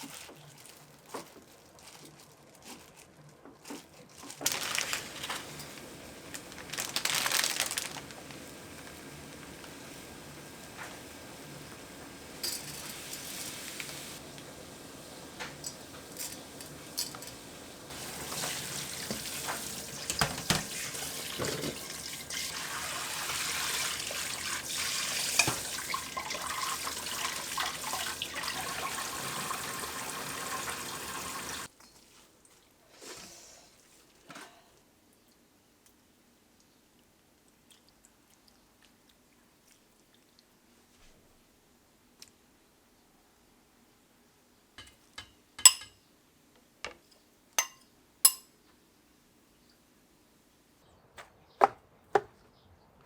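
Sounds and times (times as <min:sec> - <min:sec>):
running splashing water: 0:17.9 - 0:31.7.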